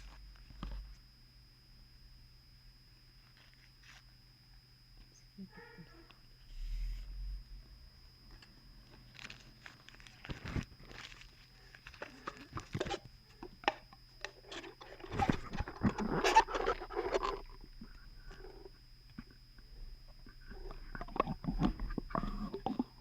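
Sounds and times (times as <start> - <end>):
paper packaging crinkling: 8.9 - 13.1.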